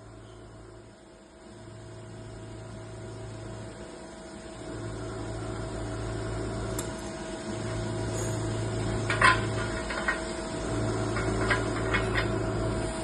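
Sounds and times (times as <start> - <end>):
welding machine hum: 0.0 - 13.0
welding hiss: 5.0 - 13.0.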